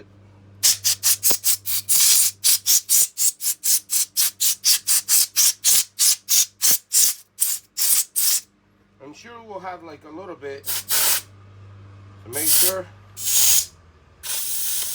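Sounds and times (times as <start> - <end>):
air hose blow gun blasts: 0.6 - 8.4, 10.7 - 11.3, 12.4 - 14.9.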